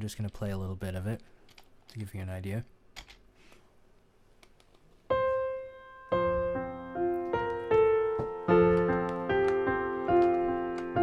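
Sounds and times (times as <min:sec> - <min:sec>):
slow piano carol: 0:05.1 - 0:11.0.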